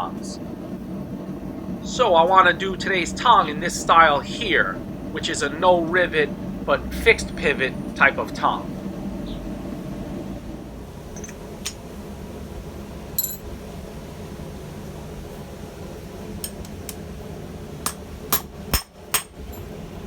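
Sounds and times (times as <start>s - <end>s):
steady low hum: 0.0s - 20.0s
metal clinks and knocks: 13.2s - 13.4s.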